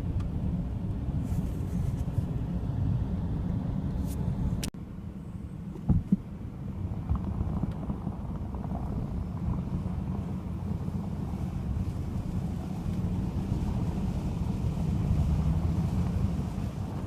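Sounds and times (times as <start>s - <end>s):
wind buffeting microphone: 5.8s - 17.0s.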